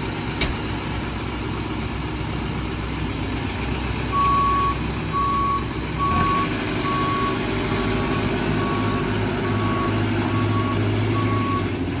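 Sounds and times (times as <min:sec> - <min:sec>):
diesel engine running: 0:00.0 - 0:12.0
reversing alarm beeping: 0:04.1 - 0:11.8.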